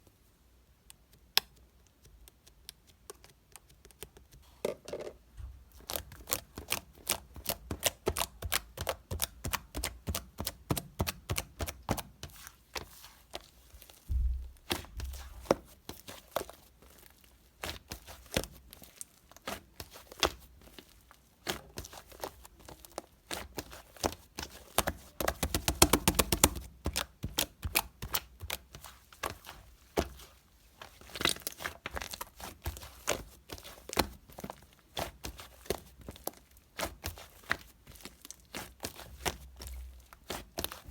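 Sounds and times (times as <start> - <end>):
sharp clicks and taps: 0.9 - 5.2, 25.3 - 26.7
low thumps: 14.1 - 15.1.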